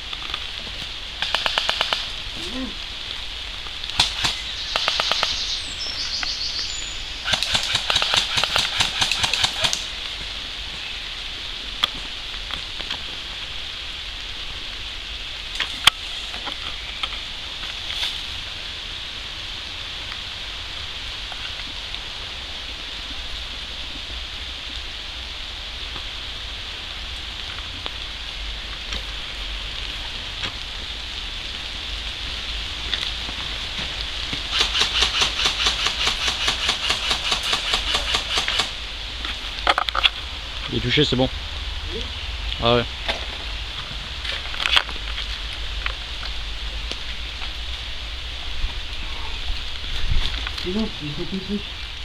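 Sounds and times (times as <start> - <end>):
airsoft gun full-auto bursts: 1.2 - 2.1, 7.3 - 9.9, 34.5 - 38.8.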